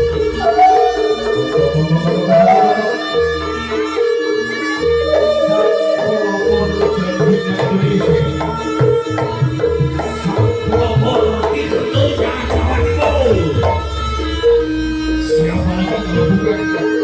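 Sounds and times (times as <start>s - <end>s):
hand drums beating: 0.0s - 14.7s
live band playing instrumental: 0.0s - 17.0s.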